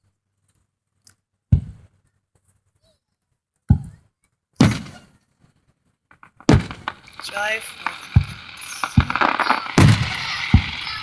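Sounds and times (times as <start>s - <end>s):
fireworks booming: 4.6s - 5.1s, 6.2s - 11.0s.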